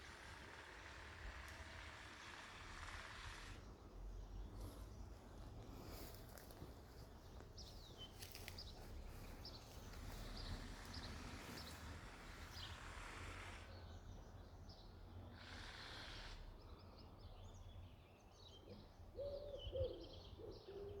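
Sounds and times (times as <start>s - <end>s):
small birds chirping: 4.1s - 12.8s.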